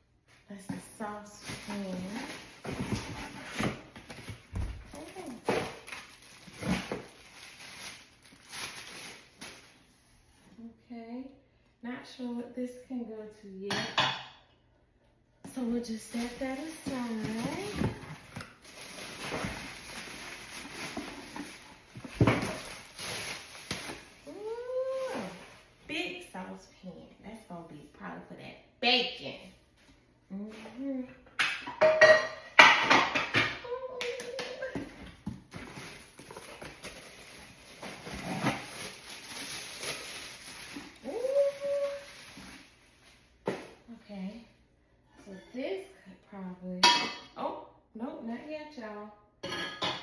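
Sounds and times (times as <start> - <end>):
packaging rustling: 1.4 - 9.8, 16.2 - 24.3, 35.2 - 42.8
woman humming: 24.3 - 25.4, 41.0 - 42.1.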